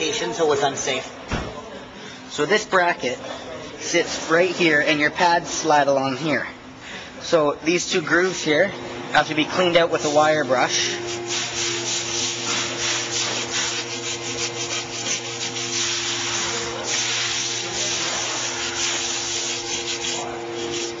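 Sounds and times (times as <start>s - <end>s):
wire brush scrubbing metal: 9.8s - 21.0s.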